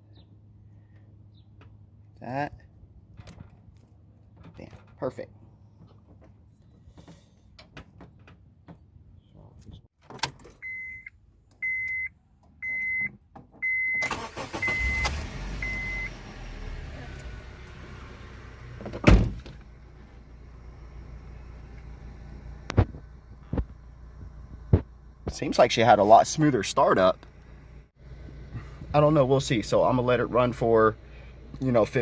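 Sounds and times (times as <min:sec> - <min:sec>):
car chime beeping: 0:10.6 - 0:16.2
car engine cranking and starting: 0:14.0 - 0:25.2
car engine idling: 0:14.1 - 0:25.2.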